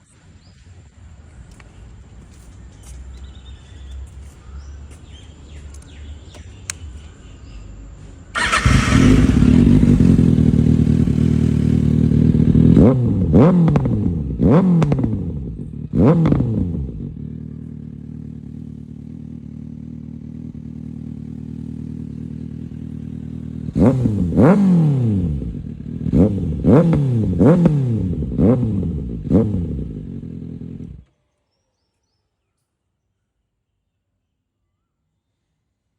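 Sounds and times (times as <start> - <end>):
motorcycle engine revving: 8.3 - 31.1.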